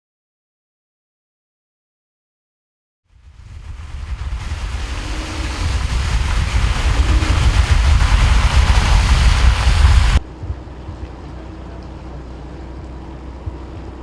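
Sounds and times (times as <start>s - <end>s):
loud rumbling with hiss: 3.2s - 12.7s.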